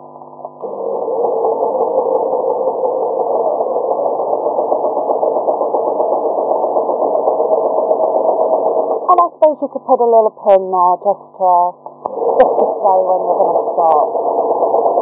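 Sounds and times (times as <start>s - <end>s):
sewing machine running: 0.6s - 9.2s, 12.1s - 15.0s.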